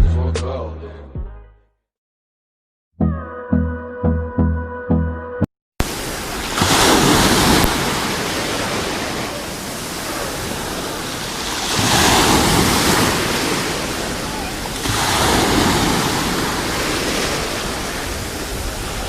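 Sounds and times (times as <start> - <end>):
sea waves washing ashore: 5.8 - 19.0.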